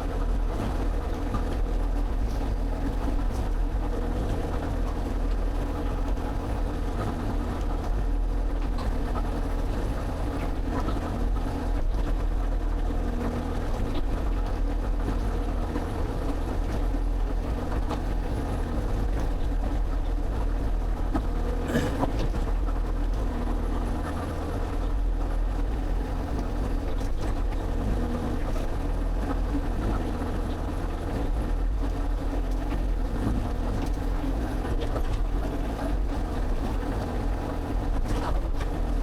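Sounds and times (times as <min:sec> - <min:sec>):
excavator diesel engine running: 0:00.0 - 0:39.0
knocks and clunks: 0:21.5 - 0:22.6.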